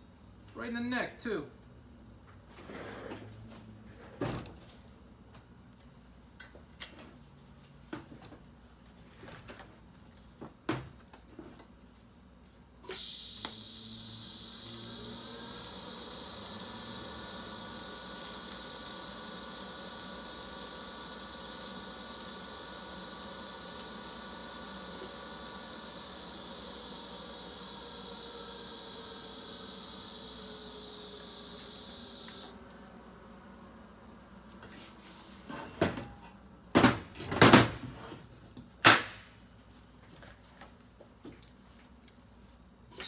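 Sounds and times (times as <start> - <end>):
welding arc buzzing and hissing: 12.9 - 32.9.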